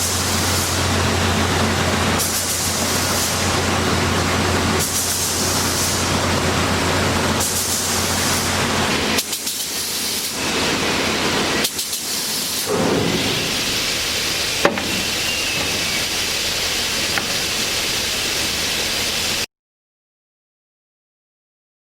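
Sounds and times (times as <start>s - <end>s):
low machine hum: 0.0s - 9.2s, 12.7s - 19.4s
belt sander hissing: 0.0s - 19.5s.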